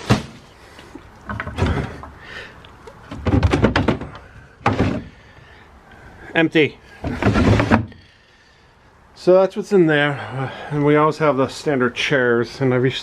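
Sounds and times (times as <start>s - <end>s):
clattering and knocks: 1.2s - 2.2s, 3.0s - 5.2s, 7.0s - 8.0s
drawers sliding open and shut: 7.0s - 8.0s.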